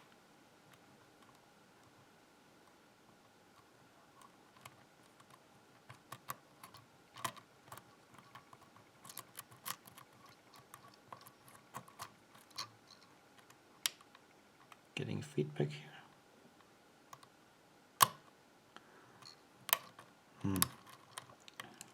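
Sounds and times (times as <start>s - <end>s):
lock pick clicks and scrapes: 4.2s - 13.5s.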